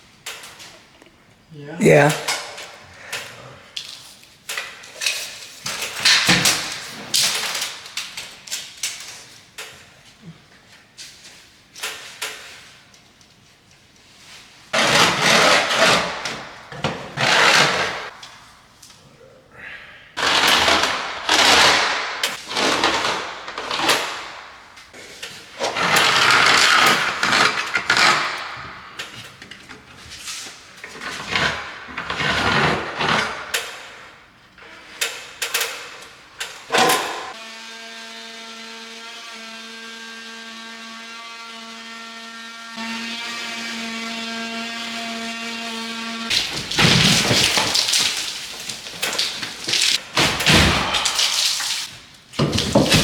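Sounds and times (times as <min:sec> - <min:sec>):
drywall being cut: 0:14.8 - 0:18.2, 0:20.2 - 0:24.6, 0:25.6 - 0:29.0, 0:30.9 - 0:33.9, 0:36.7 - 0:53.0.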